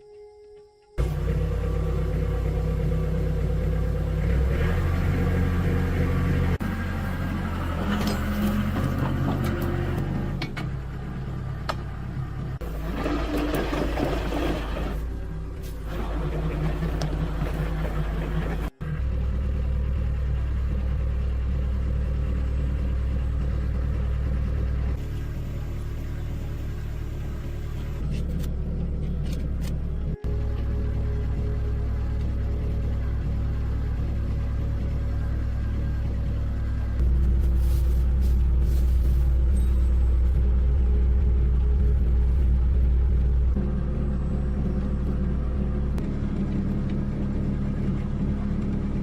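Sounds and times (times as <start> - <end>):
engine rumbling: 0.0 - 49.0.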